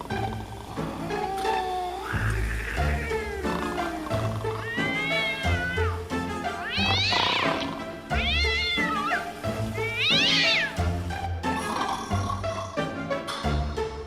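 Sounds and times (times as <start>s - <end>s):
background music: 0.0s - 14.0s
cat yowling: 1.2s - 10.8s.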